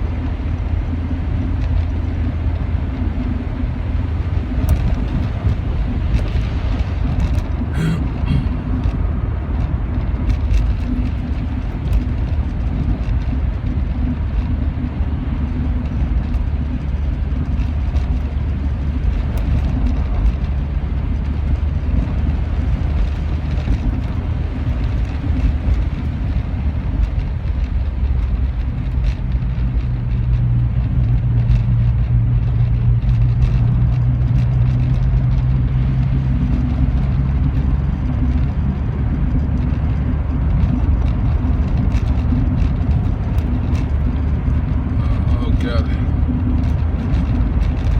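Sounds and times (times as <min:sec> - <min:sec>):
car engine and road noise: 0:00.0 - 0:47.9
low drone: 0:07.5 - 0:09.0.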